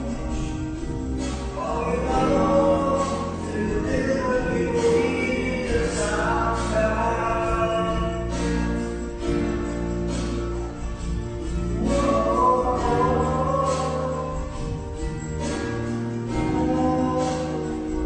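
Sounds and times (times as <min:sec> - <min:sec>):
music with singing voices: 0:00.0 - 0:18.0
steady bass line: 0:00.0 - 0:18.0.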